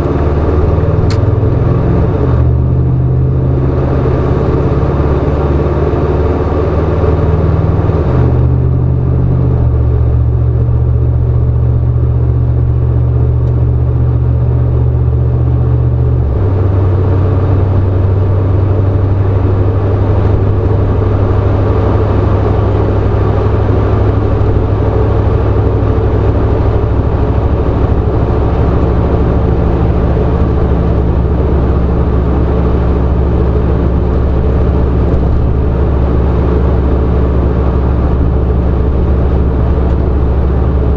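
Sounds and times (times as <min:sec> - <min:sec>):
car engine drone: 0:00.0 - 0:40.9
road noise: 0:00.0 - 0:40.9.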